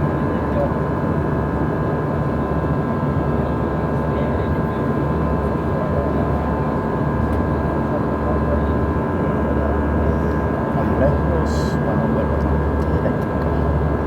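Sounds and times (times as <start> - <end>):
aircraft cabin engine drone: 0.0 - 14.0.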